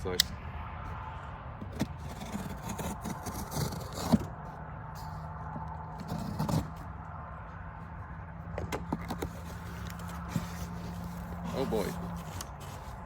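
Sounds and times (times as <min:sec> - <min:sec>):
cardboard scraping and rustling: 0:01.6 - 0:05.3, 0:05.9 - 0:06.9, 0:08.8 - 0:13.0.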